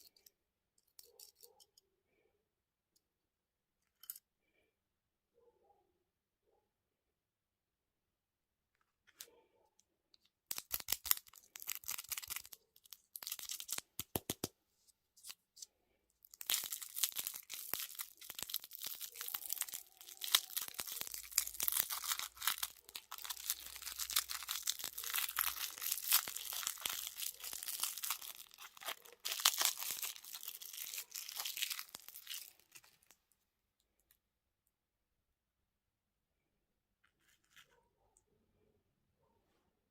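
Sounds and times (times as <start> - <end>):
packaging crinkling: 10.5 - 14.3, 16.3 - 33.1.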